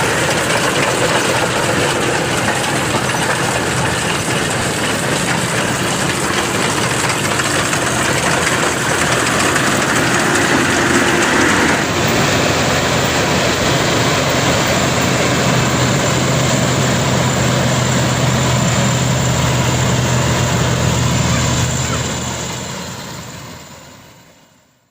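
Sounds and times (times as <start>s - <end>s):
combine harvester running: 0.0s - 24.8s.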